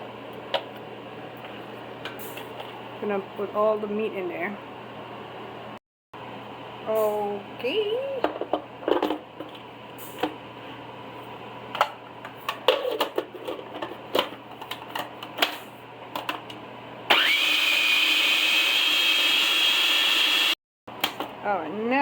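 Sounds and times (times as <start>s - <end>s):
food processor motor whining: 17.1s - 20.6s.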